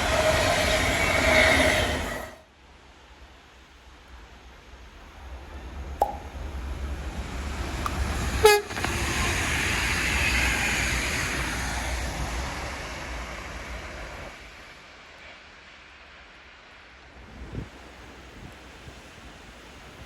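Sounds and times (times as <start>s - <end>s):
passing train rushing: 0.0s - 20.0s
train horn toot: 8.4s - 8.9s.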